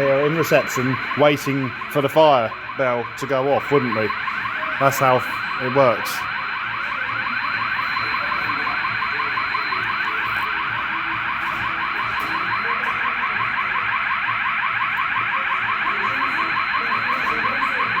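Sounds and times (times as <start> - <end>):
fire alarm sweeping tone: 0.0 - 18.0.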